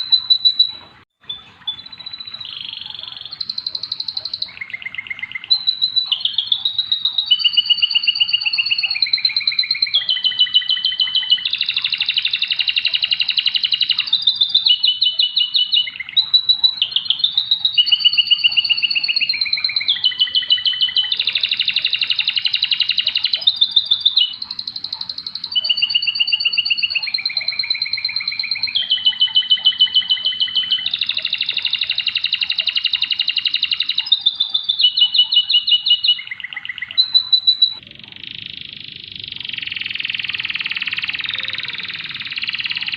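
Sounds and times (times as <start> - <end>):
canary singing rapid trills: 0.0 - 42.9.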